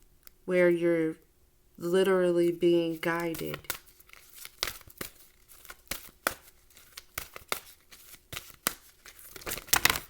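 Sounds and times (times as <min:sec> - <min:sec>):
cards being shuffled: 0:02.4 - 0:10.0.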